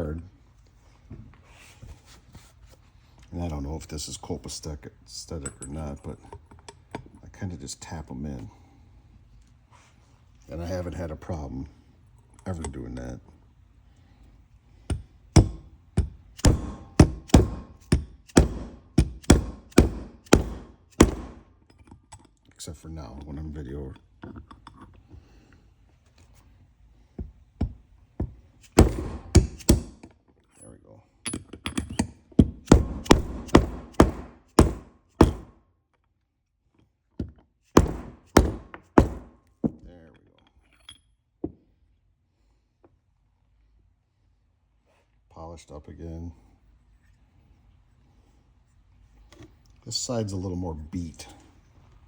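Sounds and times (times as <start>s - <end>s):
sharp knocks of pistons tapped: 14.9s - 21.4s, 31.3s - 35.5s, 37.3s - 39.8s.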